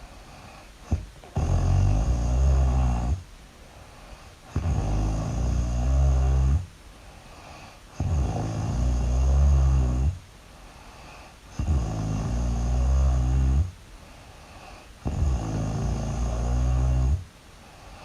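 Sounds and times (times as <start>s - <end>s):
loud cartoon snoring: 0.9s - 3.2s, 4.5s - 6.7s, 7.9s - 10.2s, 11.5s - 13.7s, 15.0s - 17.3s.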